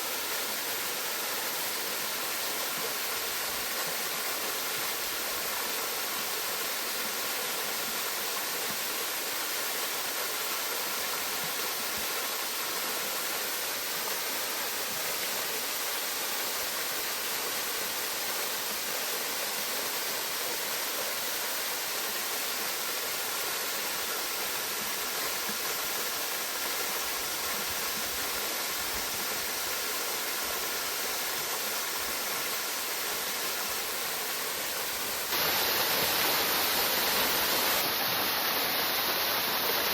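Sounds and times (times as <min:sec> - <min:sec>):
waterfall rushing: 0:08.3 - 0:39.9.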